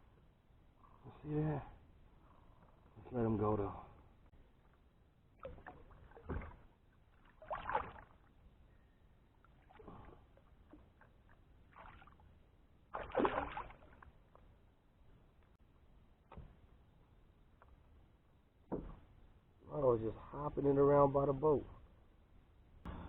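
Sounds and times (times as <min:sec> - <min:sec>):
knocks and swishes in a kayak: 0:04.0 - 0:08.8, 0:09.4 - 0:19.4
water movement: 0:05.4 - 0:08.4, 0:09.4 - 0:14.2.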